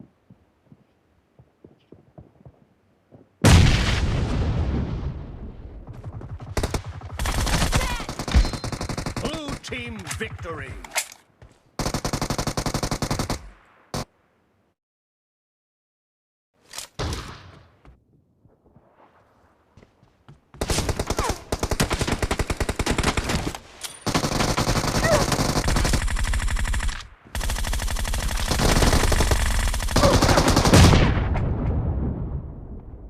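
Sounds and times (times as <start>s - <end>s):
video game gunfire: 5.9s - 11.0s, 24.2s - 31.3s.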